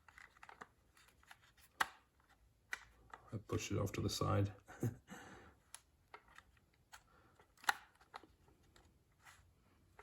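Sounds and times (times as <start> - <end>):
plastic trim clicks and rubs: 5.7 - 8.9.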